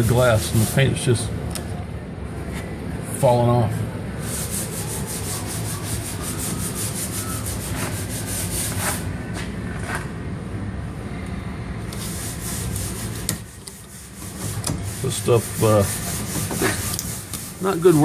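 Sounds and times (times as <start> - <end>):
scratchy rubbing noise: 0.0 - 0.9, 4.2 - 9.1, 12.0 - 18.0.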